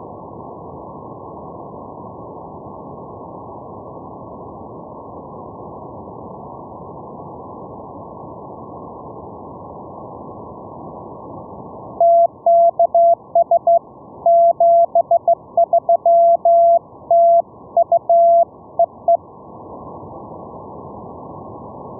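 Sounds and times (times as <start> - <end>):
morse code beeping tone: 12.0 - 19.2
receiver hiss: 12.0 - 19.3.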